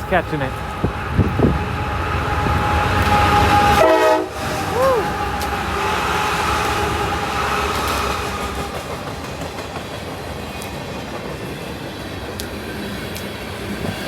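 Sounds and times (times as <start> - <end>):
train horn: 0.0 - 8.7
freight train wheels on rail: 0.0 - 14.0.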